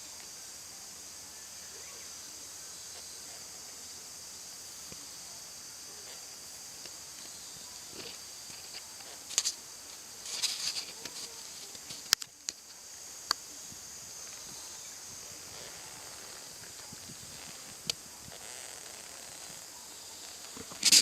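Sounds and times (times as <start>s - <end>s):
steady high hiss: 0.0s - 21.0s
sharp clicks and crackles: 6.8s - 13.4s, 15.5s - 21.0s.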